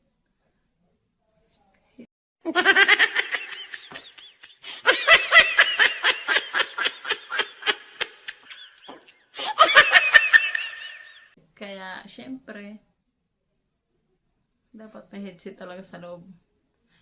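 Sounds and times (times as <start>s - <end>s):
high-pitched laughter: 2.5s - 11.3s.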